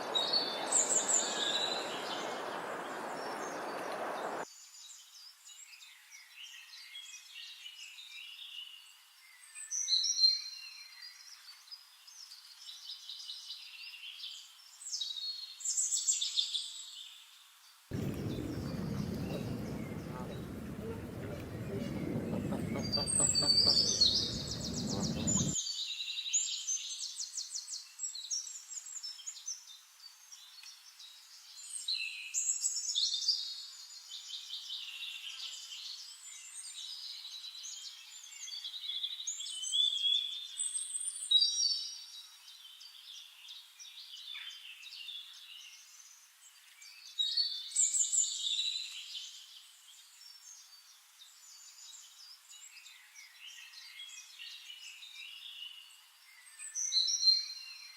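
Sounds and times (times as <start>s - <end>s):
songbirds chirping and trilling: 0.0s - 4.4s, 17.9s - 25.6s.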